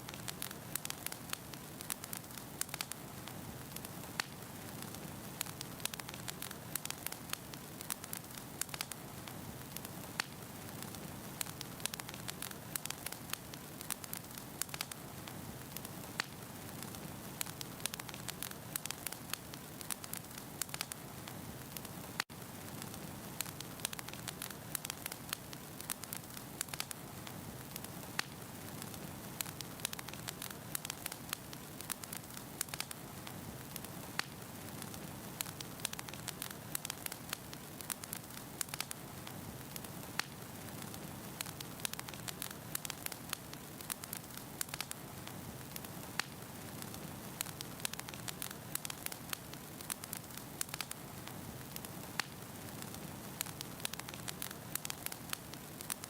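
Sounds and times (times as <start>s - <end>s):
logs crackling and popping: 0.0s - 56.0s.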